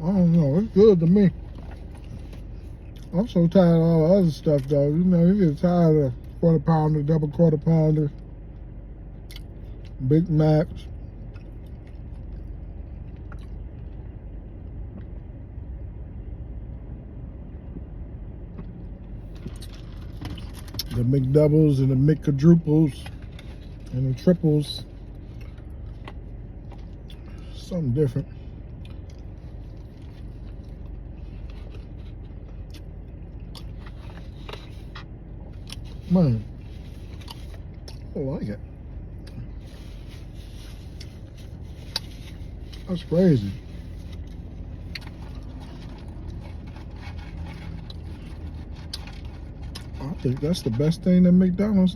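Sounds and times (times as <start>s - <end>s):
steady low hum: 0.0s - 51.9s
vehicle engine rumbling: 0.0s - 51.9s
person chewing with crunches: 0.3s - 3.4s, 8.2s - 10.0s, 10.8s - 15.2s, 18.6s - 21.4s, 22.2s - 38.2s, 38.9s - 51.0s.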